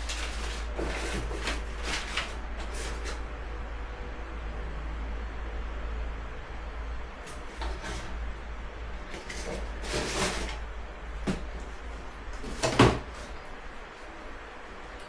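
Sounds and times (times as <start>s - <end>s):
handling rustles: 0.0s - 3.2s, 9.0s - 14.3s
scrapes: 0.0s - 3.3s, 7.2s - 8.3s, 9.0s - 14.2s.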